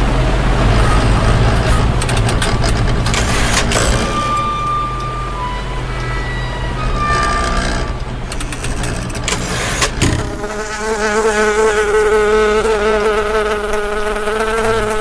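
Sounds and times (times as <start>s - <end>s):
scattered clicks: 1.6s - 4.4s
loud wavering buzz: 3.3s - 15.0s.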